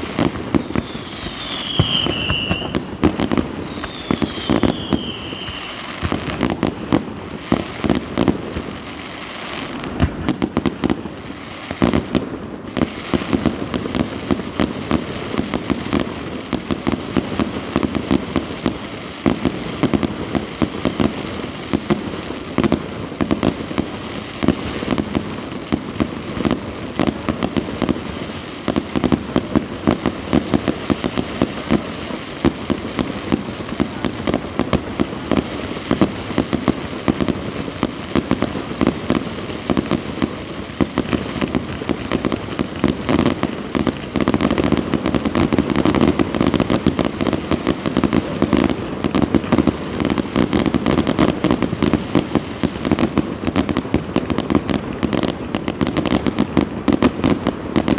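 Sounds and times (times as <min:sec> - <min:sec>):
falling firework whistles: 0:00.0 - 0:06.6
fireworks cracks and bangs: 0:00.0 - 0:57.9.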